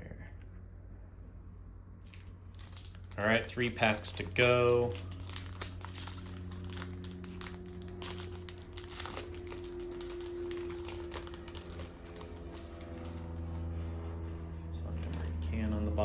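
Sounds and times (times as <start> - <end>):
foil wrapper crinkling: 2.0 - 13.6, 15.0 - 15.5.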